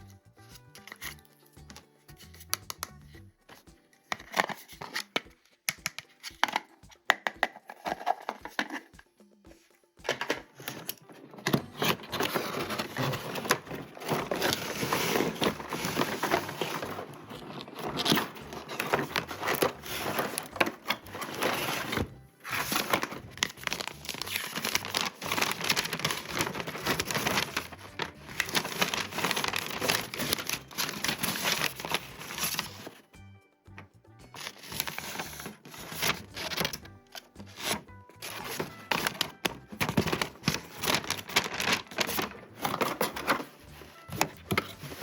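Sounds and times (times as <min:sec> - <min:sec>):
packaging crinkling: 0:10.1 - 0:33.0, 0:34.4 - 0:45.0.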